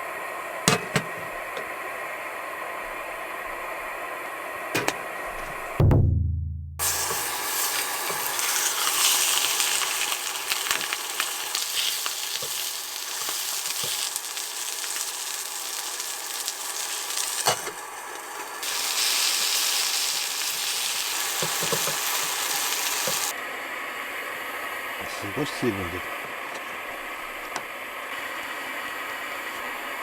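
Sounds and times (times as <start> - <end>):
food sizzling in a frying pan: 6.8 - 23.4.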